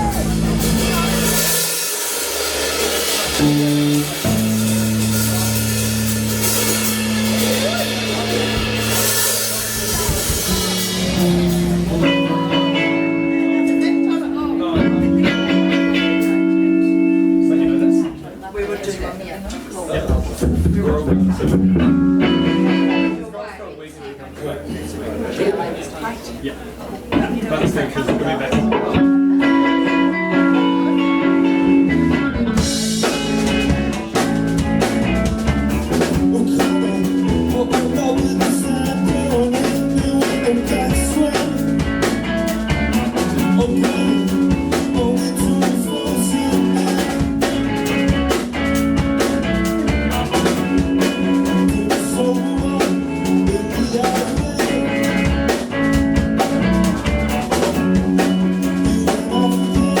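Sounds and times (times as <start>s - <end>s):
cymbals: 0.0s - 12.8s
drum-kit beat: 0.0s - 17.5s, 20.0s - 23.2s, 27.1s - 60.0s
electric guitar: 0.0s - 18.3s, 20.1s - 23.3s, 27.1s - 60.0s.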